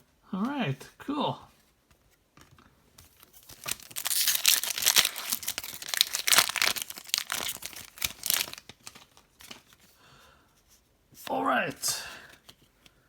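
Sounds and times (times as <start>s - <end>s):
plastic wrapper tearing and crinkling: 3.2s - 9.8s.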